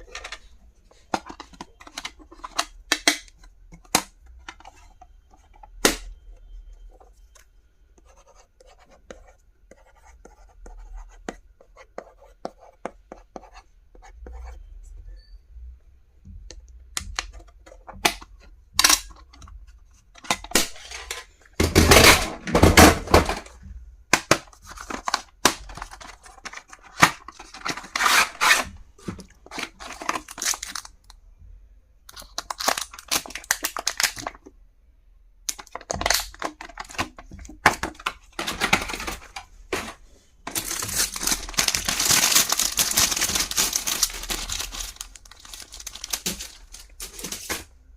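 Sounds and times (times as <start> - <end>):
packaging tearing and crinkling: 40.5 - 47.6.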